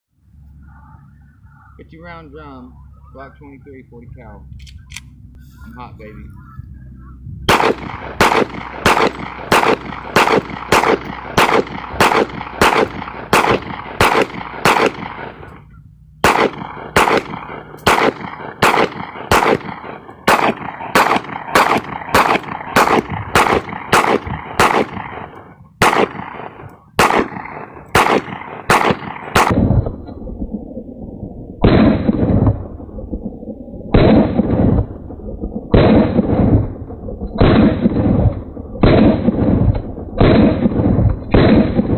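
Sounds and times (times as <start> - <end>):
pistol firing single shots: 7.5 - 15.4, 16.2 - 29.6, 40.2 - 41.9.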